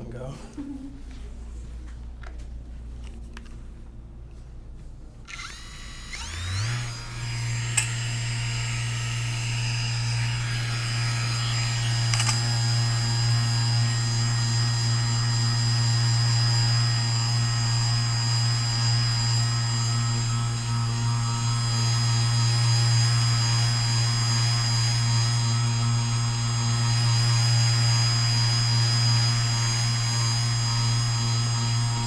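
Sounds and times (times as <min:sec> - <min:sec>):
small electric motor humming: 0:05.3 - 0:32.0
sharp click: 0:07.7 - 0:08.0, 0:12.0 - 0:12.5.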